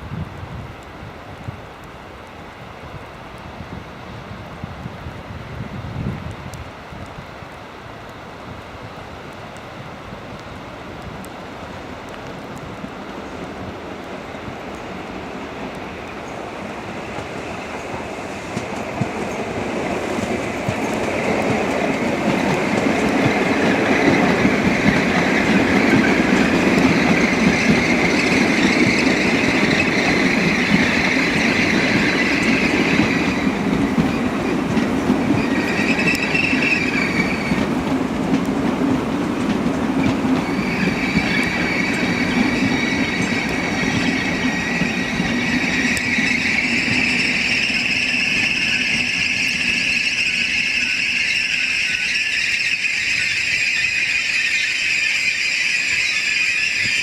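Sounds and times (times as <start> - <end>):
train rolling noise: 0.0 - 57.0
train wheels squealing: 16.2 - 37.7, 39.9 - 57.0.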